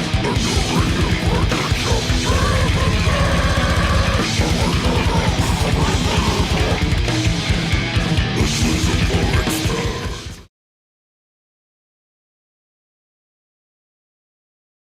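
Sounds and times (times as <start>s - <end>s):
fast dense drumming: 0.0s - 10.3s
distorted electric guitars: 0.0s - 10.5s.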